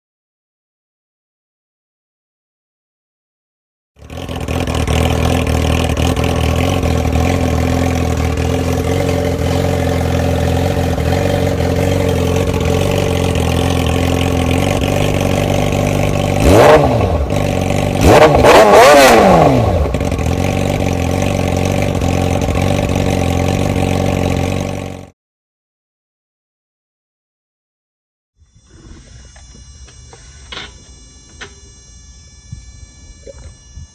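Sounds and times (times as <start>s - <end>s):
motorcycle throttle blips: 4.0s - 24.9s, 28.7s - 33.9s
motorcycle engine idling: 4.0s - 25.1s.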